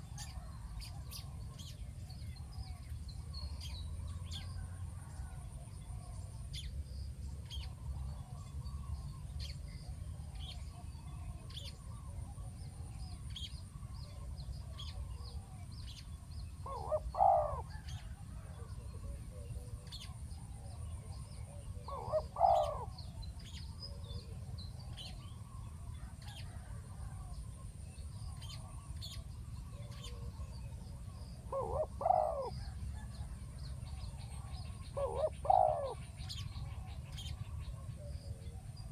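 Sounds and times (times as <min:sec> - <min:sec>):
small birds chirping faintly: 0:00.0 - 0:38.9
dove cooing: 0:16.6 - 0:20.2, 0:21.4 - 0:23.1, 0:31.4 - 0:33.4, 0:34.4 - 0:38.8.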